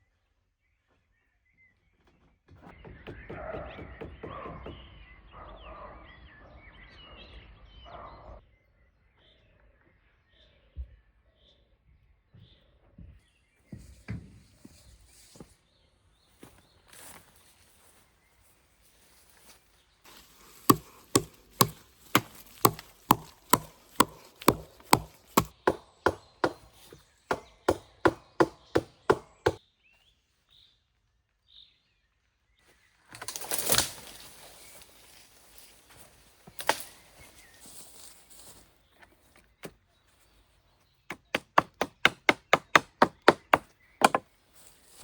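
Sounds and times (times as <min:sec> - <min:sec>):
axe chopping wood: 0:20.1 - 0:29.6, 0:41.1 - 0:44.3.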